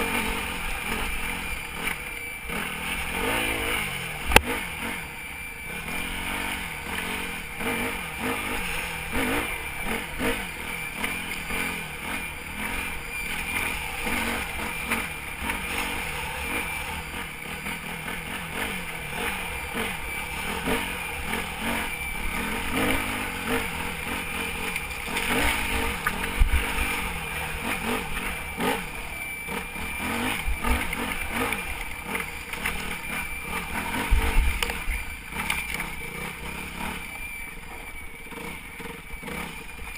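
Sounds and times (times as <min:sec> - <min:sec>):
motorcycle engine revving: 0:00.0 - 0:39.9
thin high whistle: 0:32.8 - 0:39.9.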